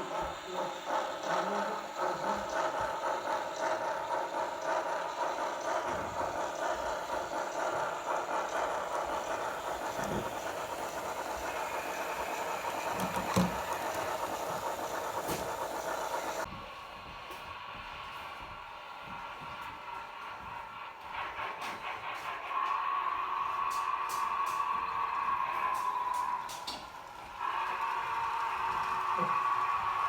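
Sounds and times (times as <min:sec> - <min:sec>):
model train whirring: 0:00.0 - 0:30.0.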